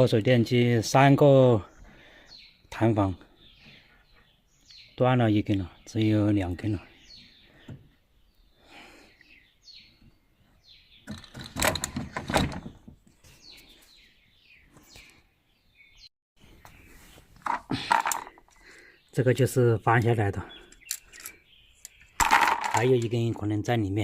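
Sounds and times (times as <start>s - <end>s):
small birds chirping: 0.0s - 24.0s
parts clattering: 11.1s - 13.1s, 17.4s - 18.8s, 20.7s - 23.4s.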